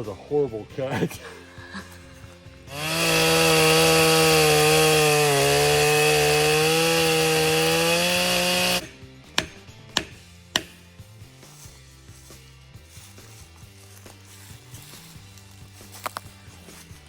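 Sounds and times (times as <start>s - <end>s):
chainsaw cutting wood: 2.7s - 10.8s
sharp knocks: 8.1s - 10.8s.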